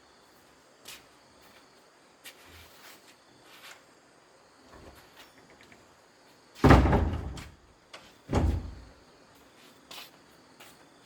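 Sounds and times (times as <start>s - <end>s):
heavy thumps: 6.6s - 7.6s, 8.3s - 8.9s.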